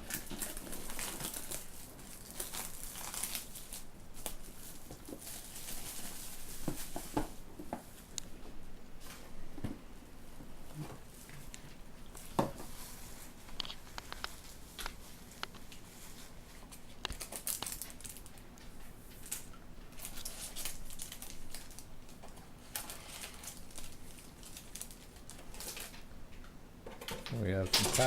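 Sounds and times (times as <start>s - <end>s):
cardboard rustling and crinkling: 0.1s - 8.1s, 19.1s - 26.0s.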